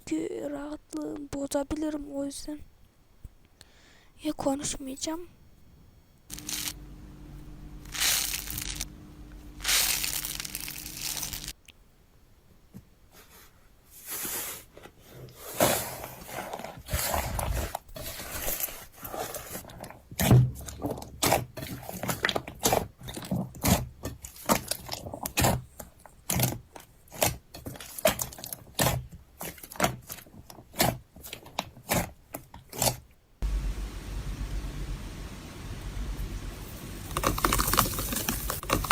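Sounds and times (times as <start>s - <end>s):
crunchy crackles and pops: 6.3s - 11.8s, 35.8s - 38.9s
slime squishing: 7.8s - 8.9s, 9.6s - 11.6s, 15.6s - 33.0s, 37.0s - 38.9s.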